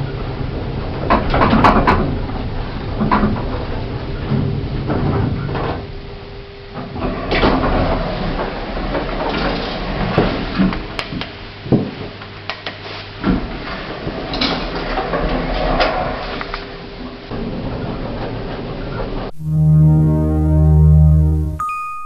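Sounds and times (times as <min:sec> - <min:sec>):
lift humming: 0:19.3 - 0:21.6.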